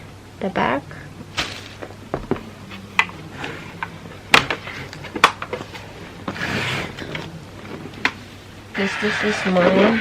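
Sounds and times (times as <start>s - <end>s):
knocks and clicks on plastic fridge: 2.1s - 2.5s.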